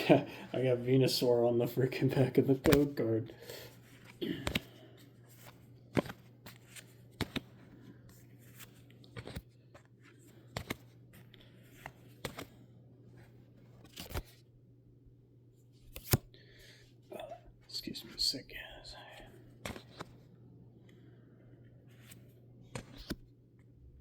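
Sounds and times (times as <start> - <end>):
cards snapping: 2.6 - 3.0, 4.0 - 4.8, 5.4 - 7.6, 8.5 - 9.5, 10.4 - 12.6, 13.8 - 14.4, 15.9 - 16.3, 19.6 - 20.2, 22.0 - 23.2.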